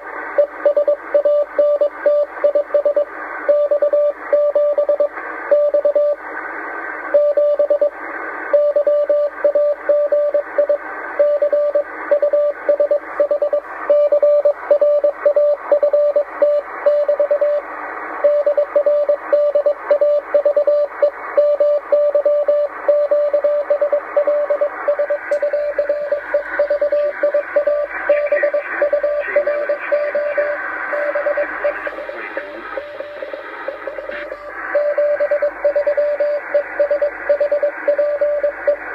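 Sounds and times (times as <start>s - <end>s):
morse code beeps: 0.4s - 6.2s, 8.6s - 17.6s, 18.2s - 38.8s
radio static: 24.0s - 37.9s.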